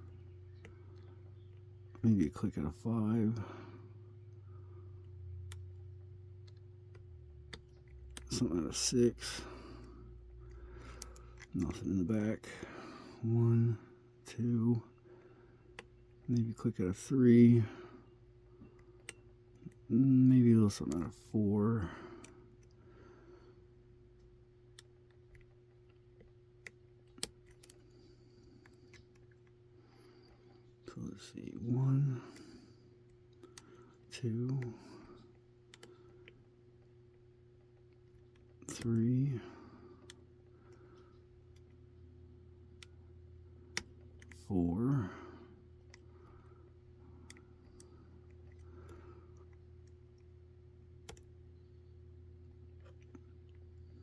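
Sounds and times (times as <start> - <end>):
low steady hum: 0.0 - 54.0
lock pick ticks and clicks: 18.7 - 21.3, 45.8 - 51.4.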